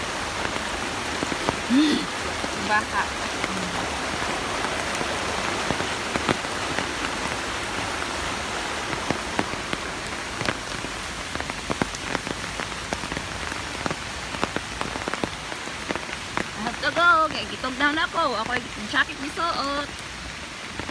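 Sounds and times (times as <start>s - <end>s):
raindrops tapping: 0.0s - 20.9s
steady rain: 0.0s - 20.9s.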